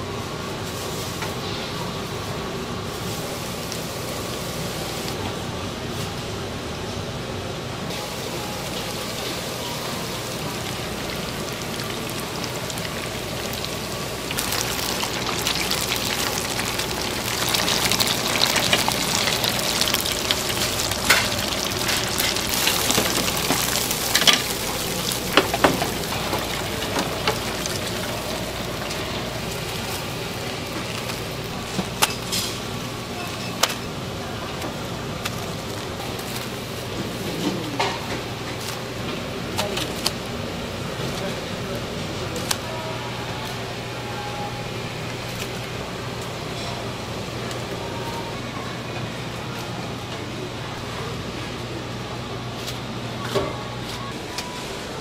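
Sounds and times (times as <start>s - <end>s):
food frying sizzle: 7.9s - 33.8s, 34.6s - 37.2s.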